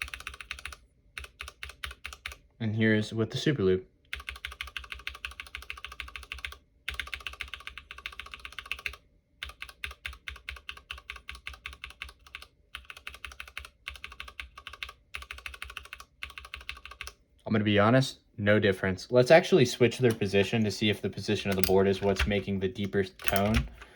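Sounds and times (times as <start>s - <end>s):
mechanical keyboard key clacking: 21.5s - 23.8s.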